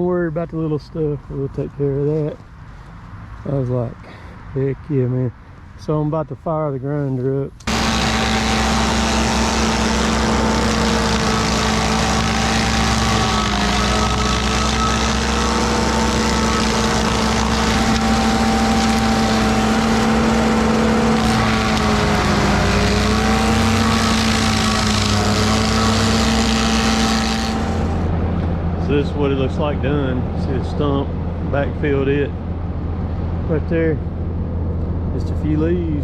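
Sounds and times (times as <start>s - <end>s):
stump grinder engine whining: 7.6s - 28.5s.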